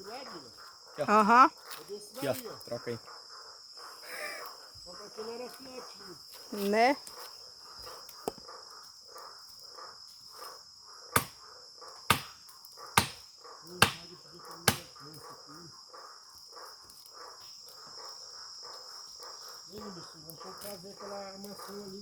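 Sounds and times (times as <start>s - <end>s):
cricket trill: 0.0s - 22.0s
rapid pulsing insect calls: 0.0s - 22.0s
sharp knocks: 11.2s - 11.4s, 12.1s - 12.4s, 13.0s - 13.2s, 13.8s - 14.0s.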